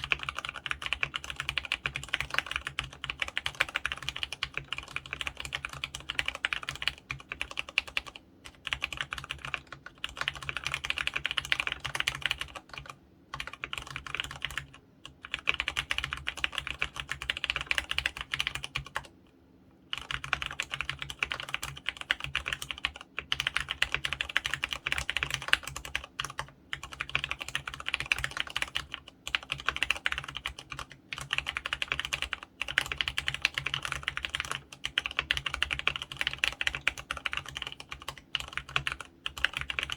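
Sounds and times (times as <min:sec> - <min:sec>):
fast typing on mechanical keyboard: 0:00.0 - 0:19.2, 0:19.9 - 0:39.9.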